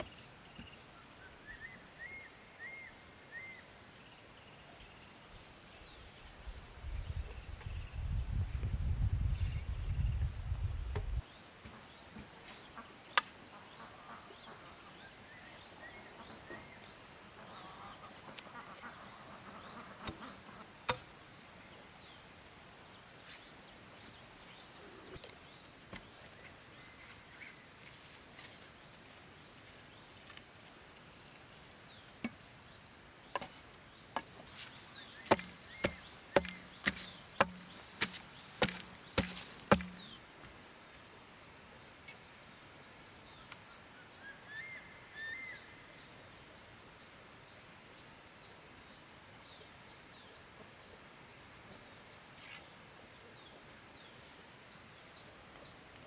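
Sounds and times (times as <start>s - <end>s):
sharp chopping strikes: 35.1s - 40.2s.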